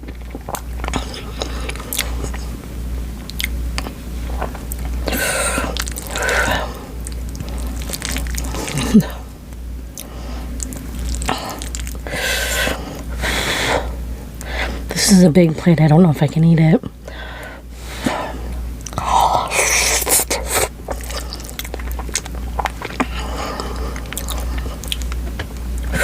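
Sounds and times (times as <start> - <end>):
wet chewing mouth clicks: 0.0 - 2.5, 3.2 - 9.2, 9.9 - 12.1, 19.8 - 26.0
breathy puffs of air: 11.3 - 14.9.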